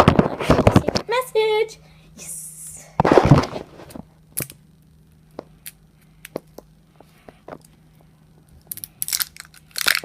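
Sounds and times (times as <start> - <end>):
packaging crinkling: 8.6 - 10.0.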